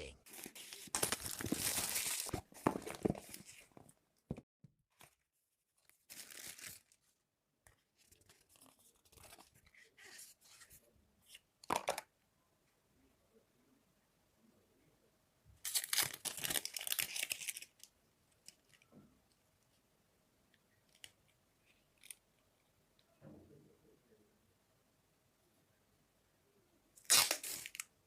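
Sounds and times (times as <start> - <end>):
packaging tearing: 0.3 - 2.3, 6.1 - 6.9, 15.6 - 17.7, 27.0 - 27.8
packaging crinkling: 0.3 - 3.7, 6.1 - 7.0, 15.7 - 17.8.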